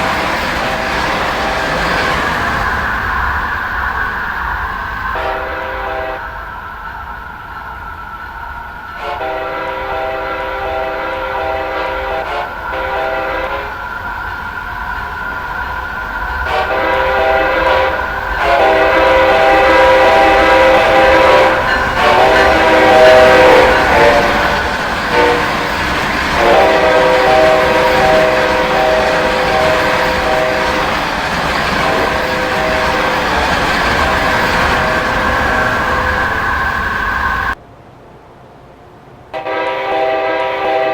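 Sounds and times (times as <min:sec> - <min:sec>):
train running noise: 0:00.0 - 0:40.9
locomotive air horn chord: 0:05.2 - 0:06.2, 0:09.0 - 0:13.8, 0:16.4 - 0:37.6, 0:39.3 - 0:40.9.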